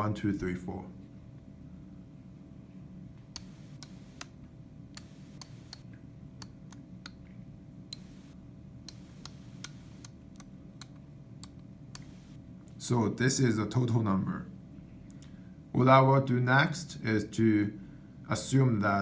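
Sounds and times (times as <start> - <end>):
small switches clicking: 3.3 - 7.3, 7.9 - 12.4.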